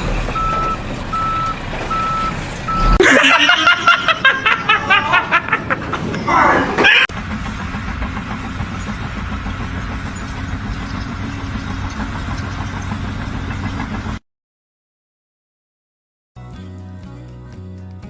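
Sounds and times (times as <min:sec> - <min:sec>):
engine running steadily: 0:00.0 - 0:03.2, 0:07.1 - 0:14.2.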